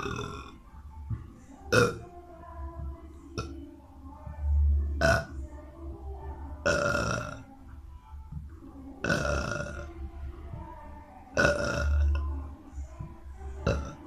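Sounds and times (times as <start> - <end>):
boy burping: 9.0 - 9.8, 11.4 - 12.2, 13.7 - 14.0.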